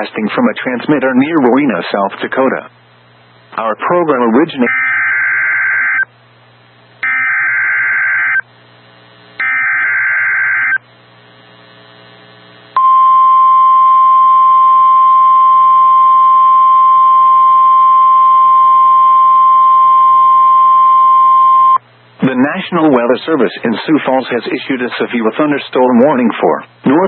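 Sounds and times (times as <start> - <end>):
steady warning alarm tone: 4.7 - 6.1, 7.0 - 8.5, 9.4 - 10.8, 12.8 - 21.8.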